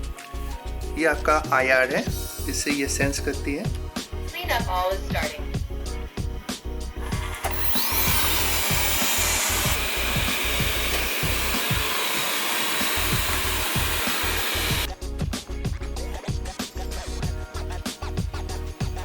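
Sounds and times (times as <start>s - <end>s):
background music with steady beat: 0.0s - 19.0s
robot vacuum suction fan whine: 7.0s - 14.9s.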